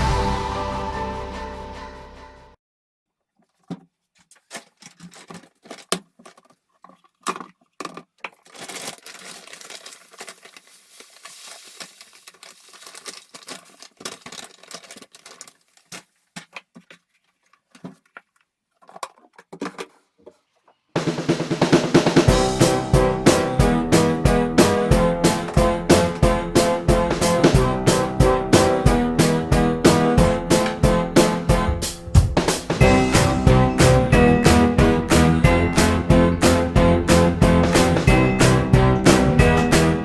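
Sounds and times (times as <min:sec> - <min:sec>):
music with a beat: 0:00.0 - 0:02.0, 0:21.0 - 0:40.0
rubbing noise: 0:21.9 - 0:40.0
household objects knocking: 0:30.5 - 0:34.8.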